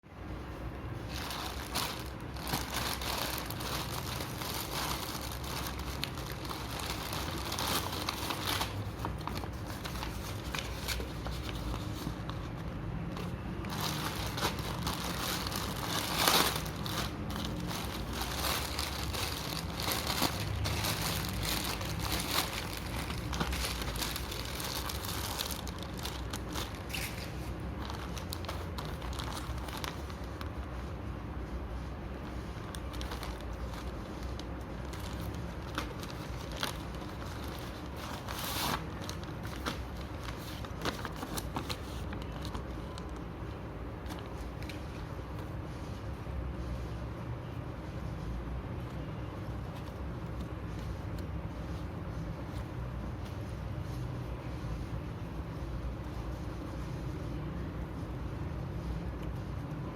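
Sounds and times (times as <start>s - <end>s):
packaging crinkling and rustling: 0.9s - 31.1s, 31.8s - 45.6s.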